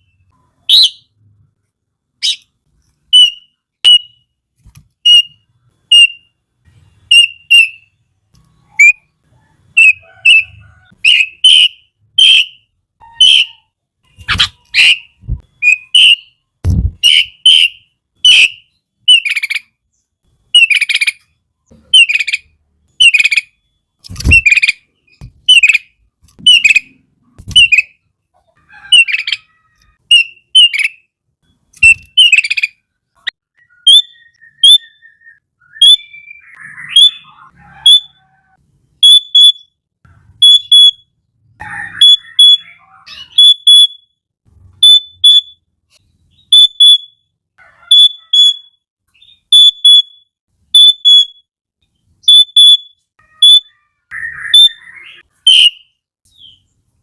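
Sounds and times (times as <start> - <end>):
dull low thumps: 16.6 - 17.1.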